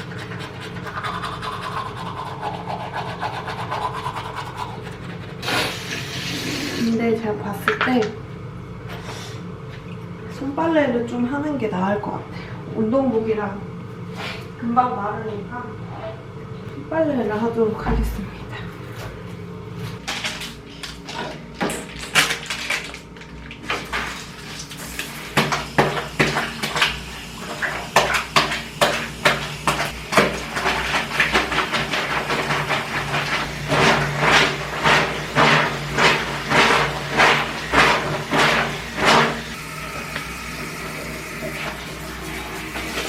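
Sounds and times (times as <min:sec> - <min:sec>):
fabric scrubbed in water: 0:29.6 - 0:39.6.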